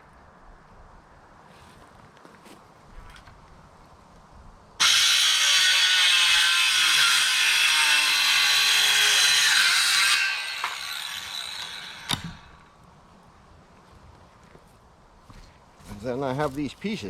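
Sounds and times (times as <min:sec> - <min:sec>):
power saw cutting wood: 0:04.8 - 0:12.6.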